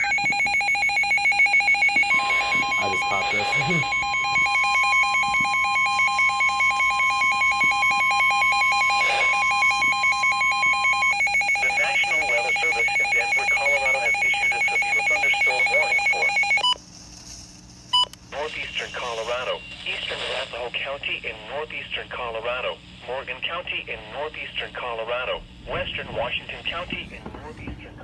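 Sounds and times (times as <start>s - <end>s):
steady warning tone: 0.0s - 16.8s, 17.9s - 28.0s
warbling two-tone alarm: 0.0s - 16.8s
faint broadcast voice: 2.2s - 4.0s, 8.9s - 9.5s, 11.5s - 16.4s, 18.3s - 28.0s.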